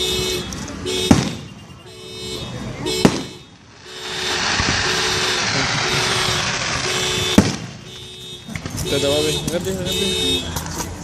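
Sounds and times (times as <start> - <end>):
car alarm repeating tone: 0.0 - 10.5
firework bangs: 1.0 - 1.6, 2.9 - 8.9
firework hissing: 3.6 - 7.8.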